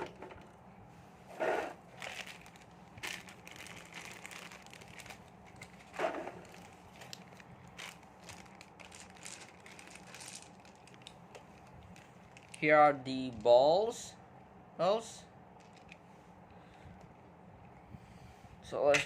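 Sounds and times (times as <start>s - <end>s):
plastic toy parts rustling and clicking: 1.9s - 13.6s, 15.6s - 16.0s.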